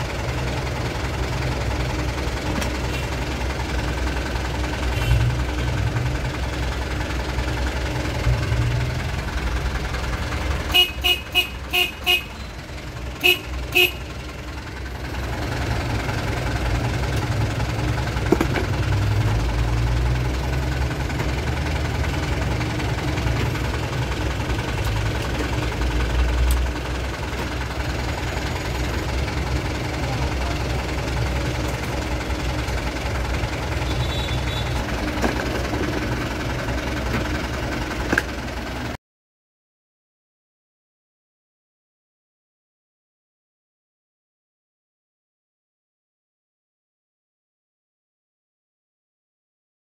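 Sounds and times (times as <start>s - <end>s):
diesel engine idling: 0.0s - 39.0s
truck horn tooting: 4.9s - 5.4s, 10.6s - 14.2s, 33.8s - 35.0s.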